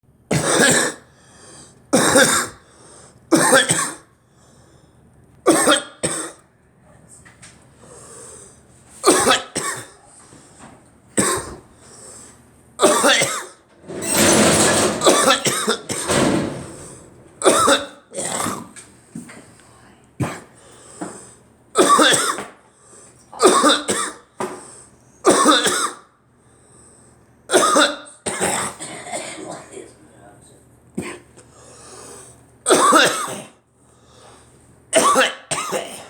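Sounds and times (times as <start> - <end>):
person coughing: 0.3 - 1.0, 5.5 - 6.4, 9.0 - 9.9, 21.8 - 22.5, 23.4 - 24.2, 25.3 - 26.0, 32.7 - 33.5, 35.0 - 36.0.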